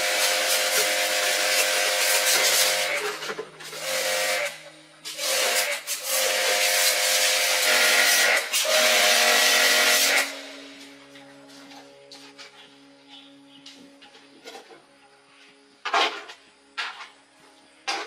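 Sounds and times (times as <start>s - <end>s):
power tool whining: 0.0s - 12.0s.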